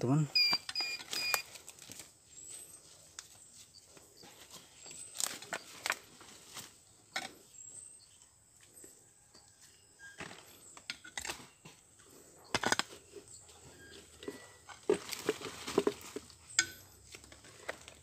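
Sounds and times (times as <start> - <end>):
hand tool scraping soil and stones: 10.0 - 18.0
metallic clinks: 16.5 - 17.0.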